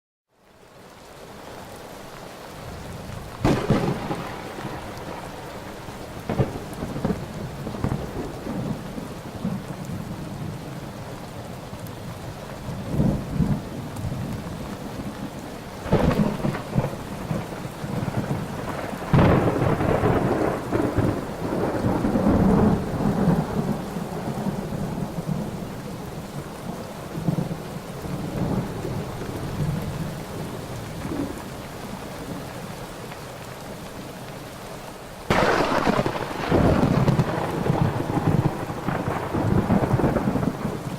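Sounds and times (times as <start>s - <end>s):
steady rain: 0.3s - 40.9s
rolling thunder: 2.7s - 10.6s, 12.8s - 26.4s, 35.3s - 40.9s.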